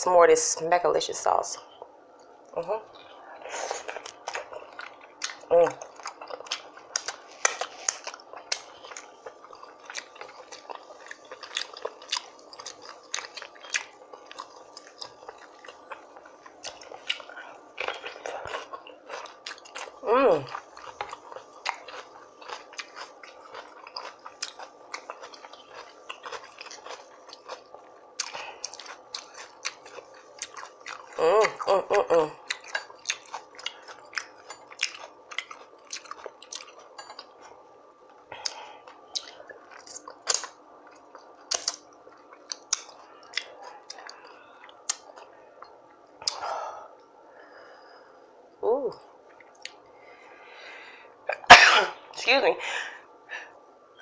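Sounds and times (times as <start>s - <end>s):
close chewing with mouth clicks: 2.9s - 37.6s, 38.3s - 46.4s.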